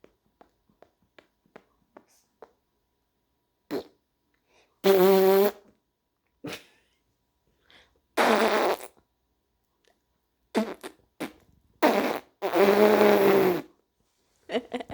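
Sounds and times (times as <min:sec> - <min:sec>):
fart-like buzzing blasts: 0:04.8 - 0:05.6, 0:08.2 - 0:09.0, 0:10.5 - 0:13.7.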